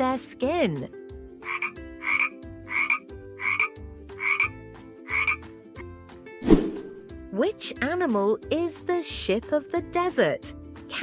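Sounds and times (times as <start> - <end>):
frog croaking: 1.4 - 4.5, 5.1 - 5.4.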